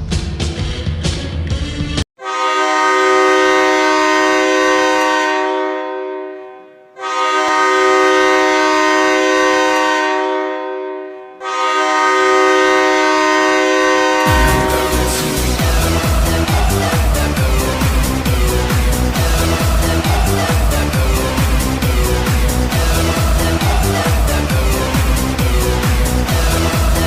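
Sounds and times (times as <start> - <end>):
multi-tone air horn blasts: 2.2 - 27.0
rock song: 14.3 - 27.0.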